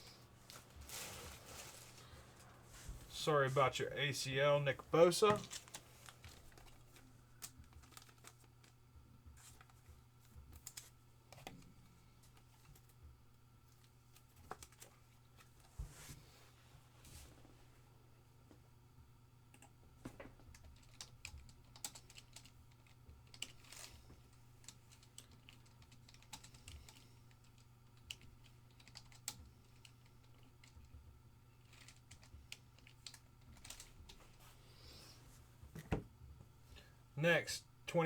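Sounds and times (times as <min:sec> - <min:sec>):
computer keyboard typing: 0:20.5 - 0:23.9, 0:24.6 - 0:30.9.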